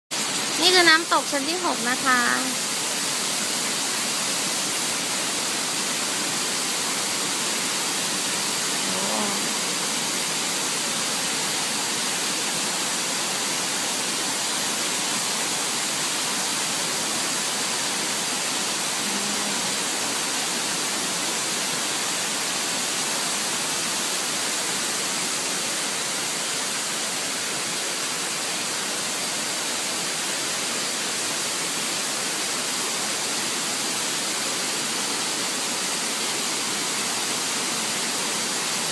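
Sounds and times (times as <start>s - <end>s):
waterfall rushing over rocks: 0.1s - 38.9s.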